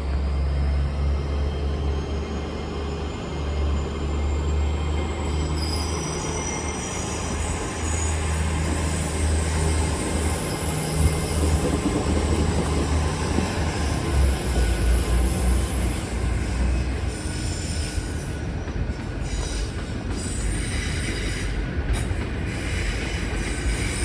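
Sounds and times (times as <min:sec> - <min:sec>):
train rumbling on track: 0:00.0 - 0:24.0
wheel squeals: 0:03.8 - 0:18.6.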